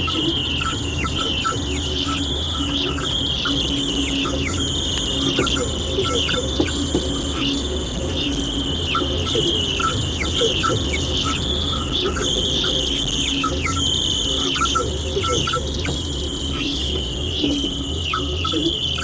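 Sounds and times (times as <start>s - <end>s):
radio high-pitched buzz: 0.0s - 19.0s.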